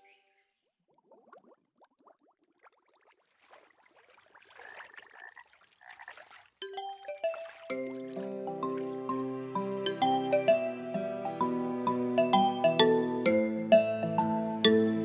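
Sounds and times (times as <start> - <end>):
frogs croaking: 4.3 - 9.0
chiming synth melody: 6.6 - 15.0.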